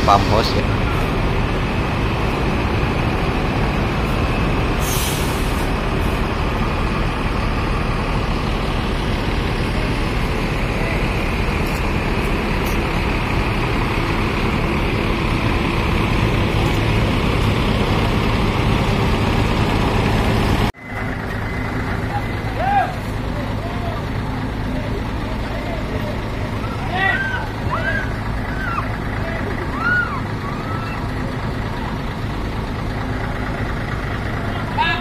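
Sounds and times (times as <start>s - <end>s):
diesel bus engine running: 0.0s - 35.0s
air brake hiss: 4.8s - 5.7s.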